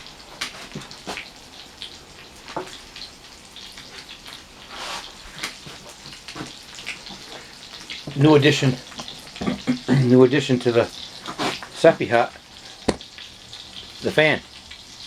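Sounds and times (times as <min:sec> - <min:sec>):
burger patty sizzling in a pan: 0:00.0 - 0:15.0.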